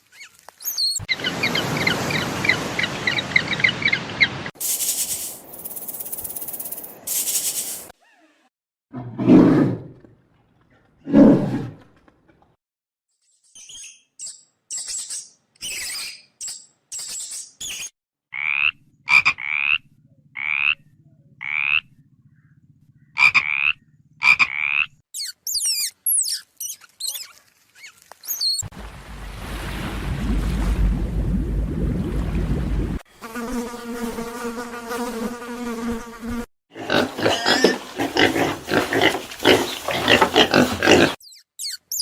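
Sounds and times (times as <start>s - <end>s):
animal roars: 8.9s - 10.1s, 11.0s - 11.9s, 36.8s - 41.2s
repeated animal calls: 18.3s - 28.6s, 36.8s - 42.0s.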